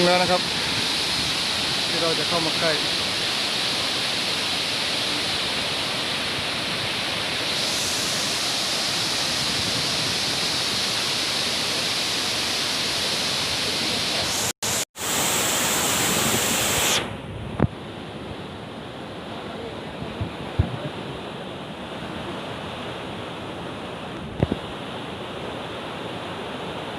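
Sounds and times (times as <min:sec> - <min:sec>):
waterfall rushing: 0:00.0 - 0:17.1.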